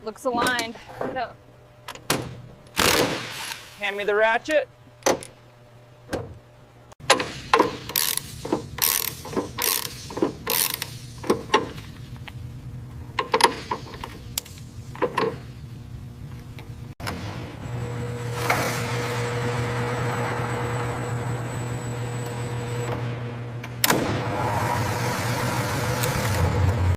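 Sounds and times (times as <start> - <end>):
steady low hum: 0.0 - 26.9
ratchet wrench clicking: 7.9 - 10.9.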